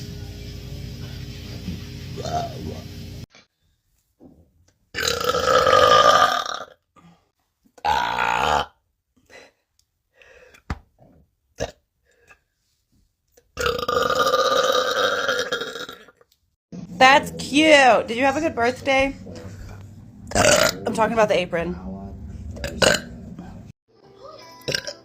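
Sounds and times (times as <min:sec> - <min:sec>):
woman burping loudly: 0:05.0 - 0:06.8, 0:07.8 - 0:08.8, 0:13.6 - 0:16.2, 0:20.3 - 0:21.0, 0:22.6 - 0:23.1, 0:24.7 - 0:25.0.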